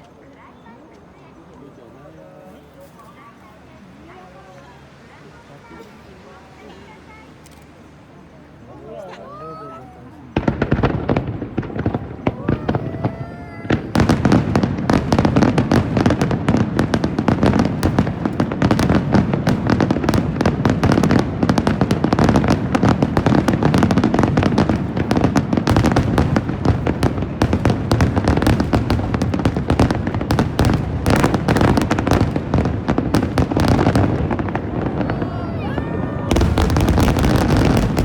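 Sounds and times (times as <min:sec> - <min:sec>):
fireworks booming and crackling: 0:09.5 - 0:38.0.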